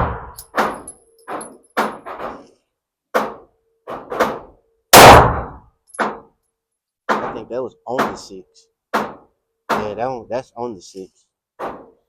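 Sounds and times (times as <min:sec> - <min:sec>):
loud handgun shot: 0:04.9 - 0:05.6.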